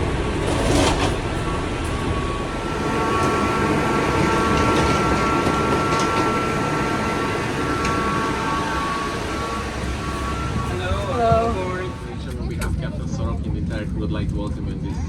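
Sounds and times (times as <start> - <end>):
airplane cabin rumble: 0.0 - 15.0
high-pitched tones: 1.4 - 12.5.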